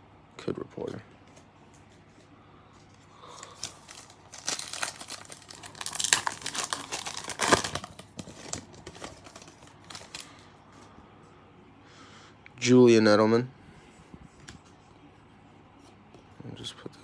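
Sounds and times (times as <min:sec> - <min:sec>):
wrapper tearing and crinkling: 0:03.3 - 0:10.4.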